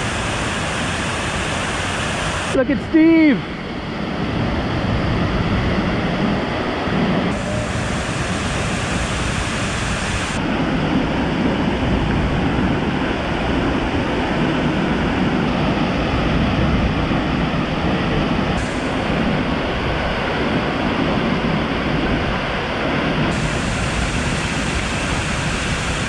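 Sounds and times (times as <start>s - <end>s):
waterfall rushing: 0.0s - 3.7s, 7.2s - 10.6s, 17.5s - 26.0s.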